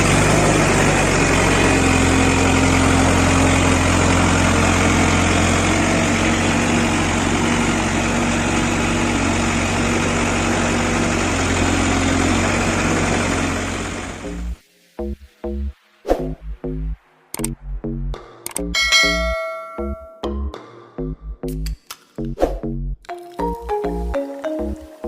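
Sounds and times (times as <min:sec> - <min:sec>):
diesel engine idling: 0:00.0 - 0:14.6.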